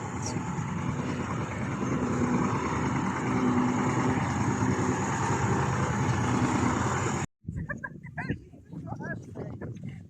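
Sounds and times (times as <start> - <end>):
vehicle engine rumble: 0.0 - 7.8.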